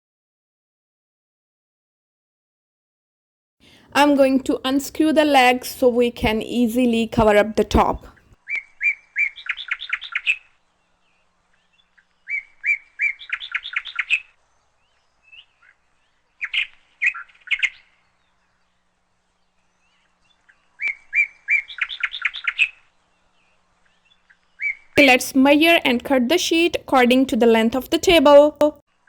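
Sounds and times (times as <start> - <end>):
songbird chirping and trilling: 8.4 - 18.7, 19.5 - 28.5.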